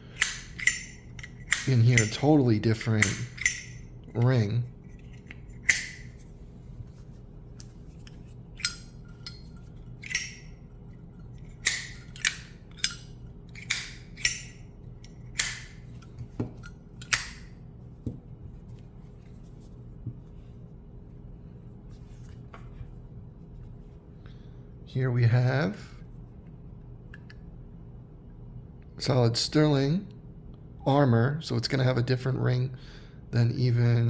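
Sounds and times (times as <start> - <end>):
lighter lid clicking: 0.1 - 2.2, 2.9 - 3.8, 5.6 - 6.1, 8.6 - 9.4, 10.0 - 10.5, 11.6 - 14.6, 15.4 - 15.8, 17.0 - 17.4.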